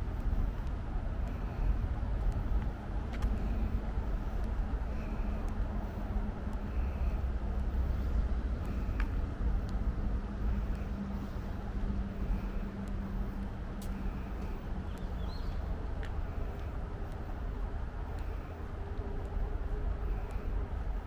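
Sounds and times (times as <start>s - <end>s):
low rumble of road traffic: 0.0s - 21.0s.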